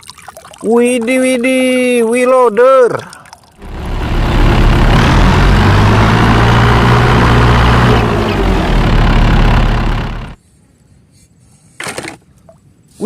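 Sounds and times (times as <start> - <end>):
heavy diesel engine running: 3.6 - 10.4.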